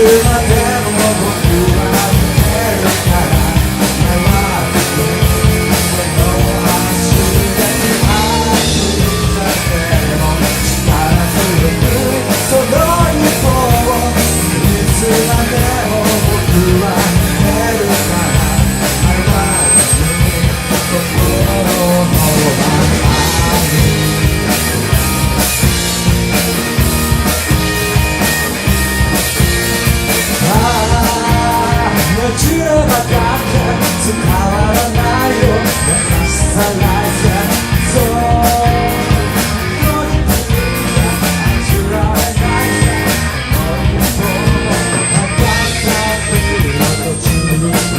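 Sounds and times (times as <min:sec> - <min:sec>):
person singing: 0:00.0 - 0:24.7, 0:30.0 - 0:47.9
rock band playing live: 0:00.0 - 0:47.9.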